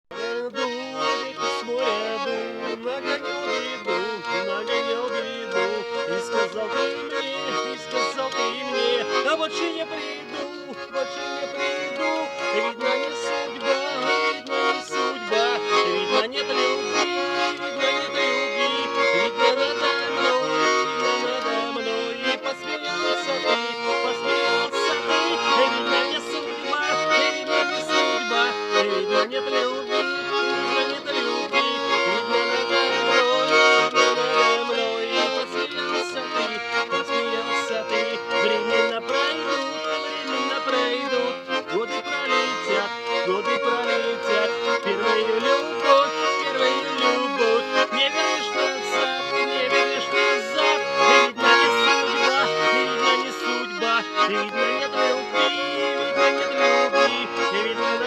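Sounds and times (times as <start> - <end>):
button accordion melody: 0.0 - 58.0.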